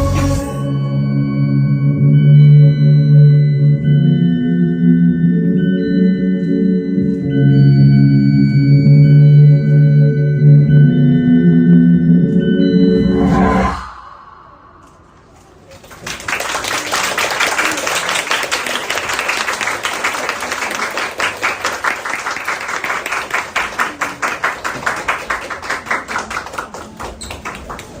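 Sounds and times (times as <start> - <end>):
audience applauding: 15.6 - 28.0.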